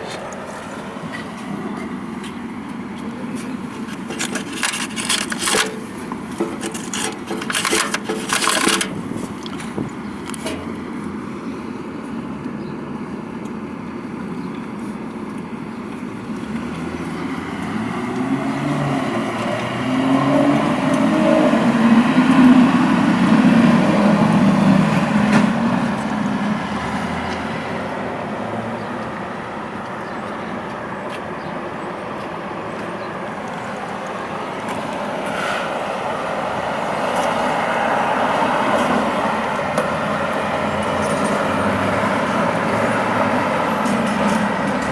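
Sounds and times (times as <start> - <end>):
street traffic passing: 0.0 - 44.9
loud engine passing: 16.5 - 29.6.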